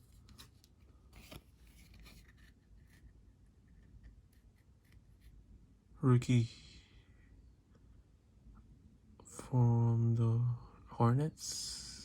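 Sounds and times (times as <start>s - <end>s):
cards rustling and clicking: 0.0s - 5.4s.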